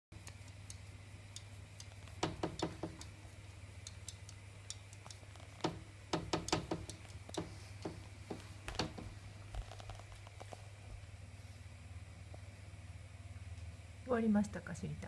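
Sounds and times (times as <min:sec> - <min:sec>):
low steady hum: 0:00.1 - 0:15.0
faint ticking: 0:00.2 - 0:09.0
light clicks and knocks: 0:00.2 - 0:10.6.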